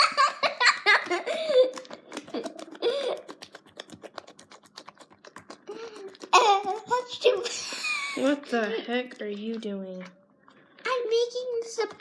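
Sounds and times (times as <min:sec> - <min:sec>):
child laughing: 0:00.0 - 0:03.3, 0:06.2 - 0:08.3
slime squished by hand: 0:01.0 - 0:07.6.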